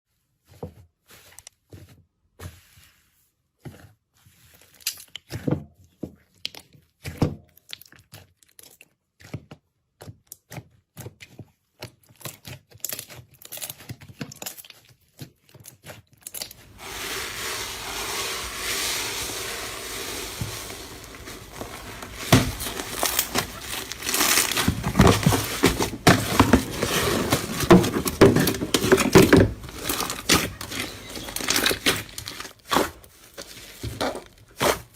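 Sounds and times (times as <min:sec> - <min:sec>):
slime popping and crackling: 0:19.1 - 0:27.7.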